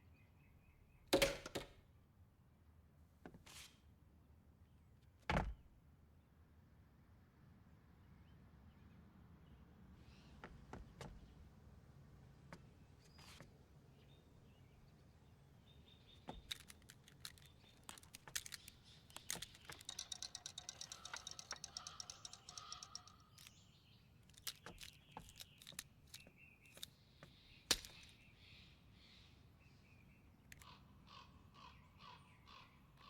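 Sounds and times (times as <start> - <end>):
cartoon clicks and knocks: 16.3 - 23.6
rapid run of clicks: 16.4 - 23.6
faint high chirping tones: 17.2 - 26.9.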